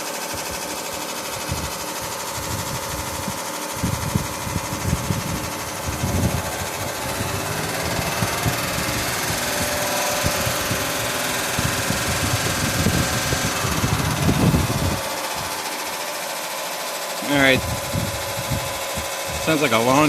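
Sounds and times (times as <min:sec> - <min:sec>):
air conditioner fan blowing: 0:00.0 - 0:20.0
knocking rattle: 0:00.9 - 0:19.4.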